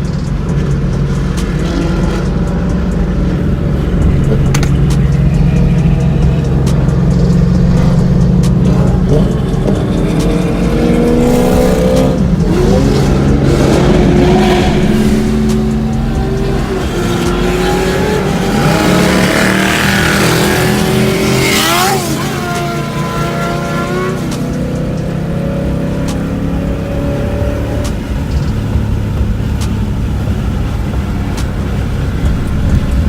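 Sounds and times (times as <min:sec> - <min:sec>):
car engines revving: 0:00.0 - 0:33.0.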